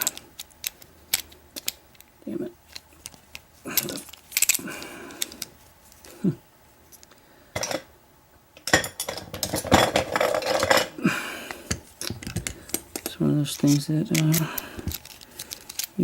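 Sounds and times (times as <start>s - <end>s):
metal padlock parts clicking: 2.7s - 6.1s, 12.1s - 16.0s.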